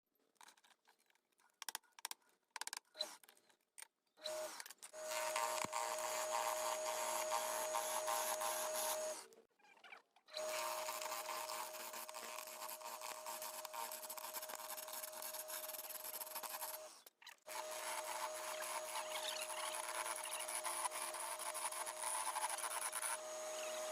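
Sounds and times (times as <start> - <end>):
power tool whining on wood: 4.2 - 9.3, 10.4 - 23.9.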